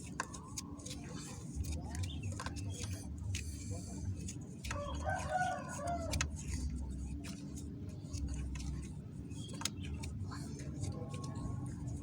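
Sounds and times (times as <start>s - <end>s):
steady low hum: 0.0s - 12.0s
rooster crowing: 4.8s - 6.1s.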